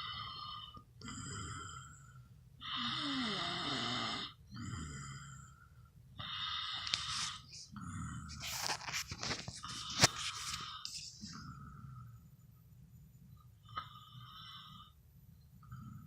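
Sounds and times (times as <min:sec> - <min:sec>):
person snoring: 0:02.7 - 0:05.3.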